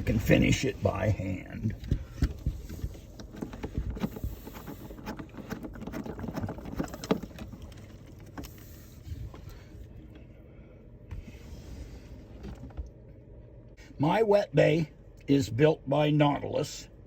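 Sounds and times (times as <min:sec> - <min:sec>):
plastic parts clicking and scraping: 0:01.7 - 0:08.8.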